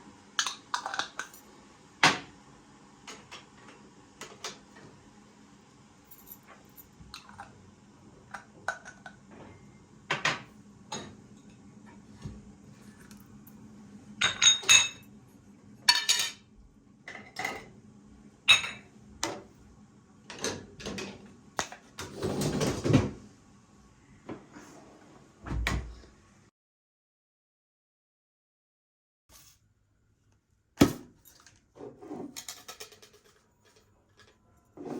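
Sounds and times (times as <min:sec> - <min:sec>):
dishes and utensils clinking: 0:14.2 - 0:15.0, 0:15.9 - 0:16.4.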